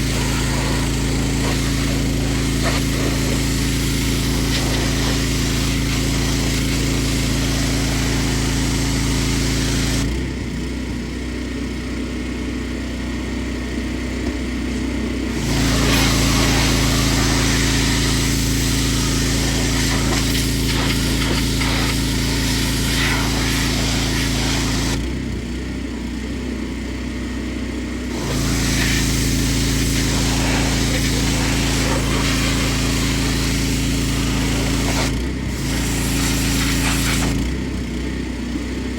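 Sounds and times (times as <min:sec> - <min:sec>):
water spray hissing: 0:00.0 - 0:10.0, 0:15.3 - 0:25.0, 0:28.1 - 0:37.4
pressure washer engine running: 0:00.0 - 0:38.9.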